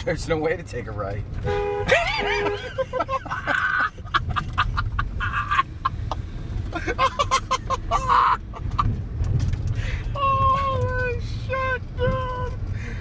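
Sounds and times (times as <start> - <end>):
people laughing: 1.9 - 8.9.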